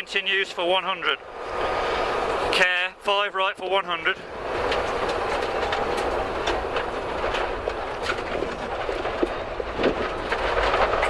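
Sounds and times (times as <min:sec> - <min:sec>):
car engine and road noise: 0:00.0 - 0:11.0
sharp clicks and rattles: 0:04.4 - 0:11.0.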